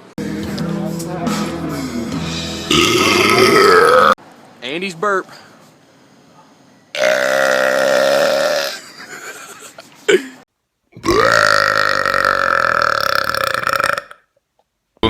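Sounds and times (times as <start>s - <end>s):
long loud burps: 2.7s - 4.2s, 7.0s - 8.9s, 11.0s - 14.4s.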